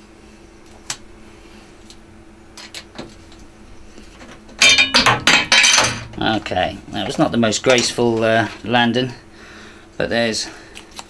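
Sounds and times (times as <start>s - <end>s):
metal bracket clattering: 4.1s - 8.7s.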